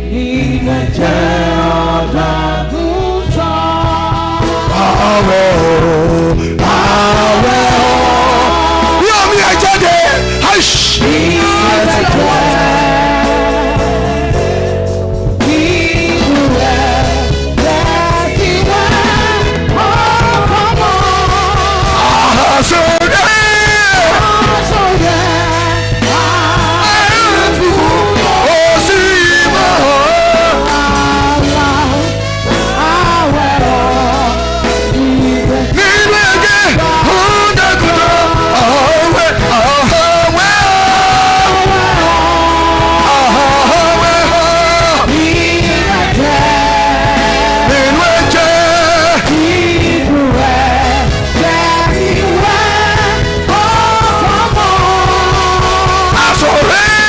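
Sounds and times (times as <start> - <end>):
band with bass and drums: 0.0 - 57.0
singers singing worship song: 0.0 - 57.0.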